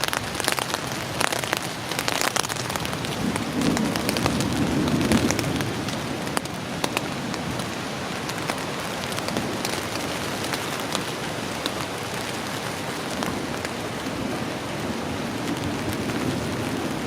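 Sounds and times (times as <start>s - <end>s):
heavy rain on a tent: 0.0s - 17.0s
thunder rumble: 0.5s - 11.5s.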